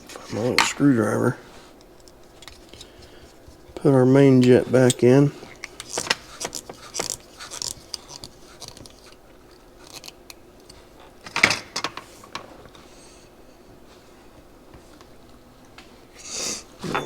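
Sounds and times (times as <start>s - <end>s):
small metal parts clicking: 4.8s - 10.8s.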